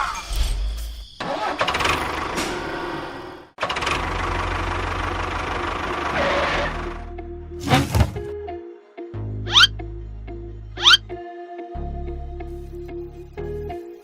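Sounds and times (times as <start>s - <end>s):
small engine running: 3.6s - 7.0s.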